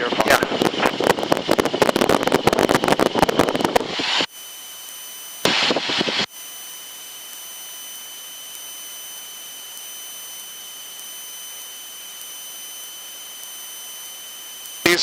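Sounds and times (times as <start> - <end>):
high electronic whine: 0.0 - 15.0
intercom hiss: 14.0 - 15.0.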